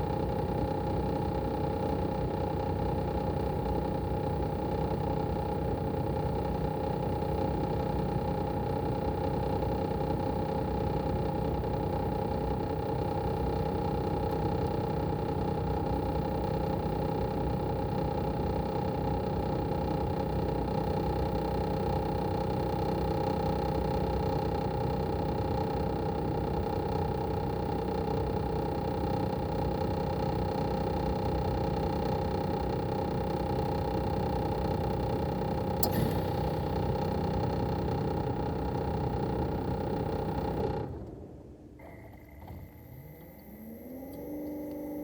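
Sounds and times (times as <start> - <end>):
air conditioner compressor hum: 0.0 - 45.0
steady whine: 35.6 - 45.0.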